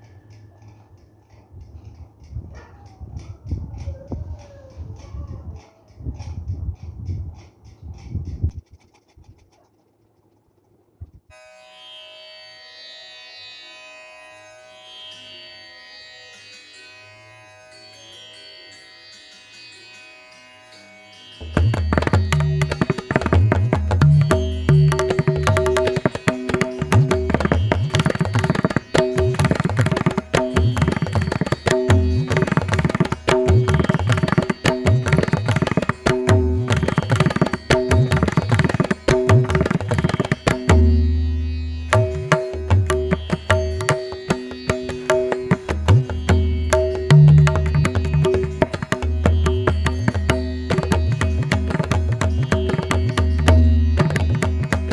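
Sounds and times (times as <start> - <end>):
music with rhythmic drumming: 21.4 - 54.9.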